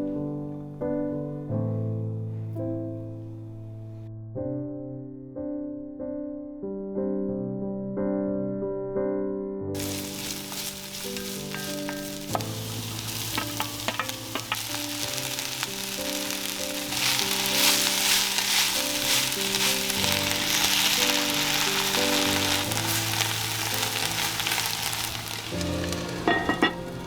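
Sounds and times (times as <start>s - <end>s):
soft background music: 0.0s - 27.0s
food sizzling in pan: 9.8s - 27.0s.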